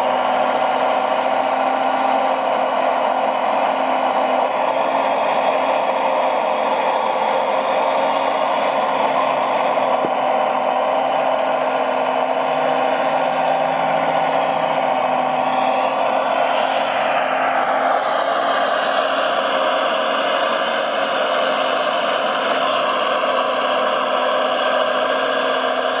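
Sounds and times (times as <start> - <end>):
model vehicle motor whirring: 9.7 - 26.0.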